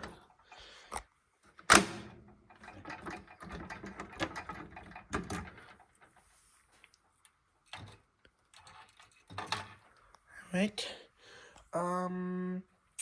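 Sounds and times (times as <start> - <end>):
keys rattling in a lock: 0.0 - 0.6, 1.5 - 6.2, 7.6 - 10.0.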